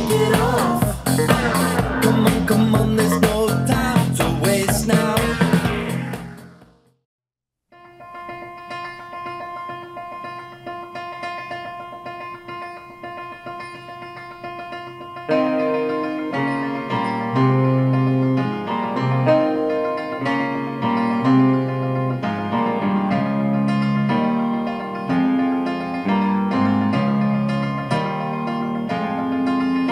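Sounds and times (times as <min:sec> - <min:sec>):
jazz piano trio over speakers: 0:15.3 - 0:29.9.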